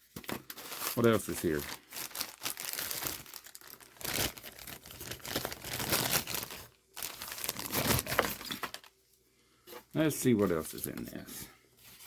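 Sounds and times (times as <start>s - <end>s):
paper rustling and crinkling: 0.0s - 8.9s.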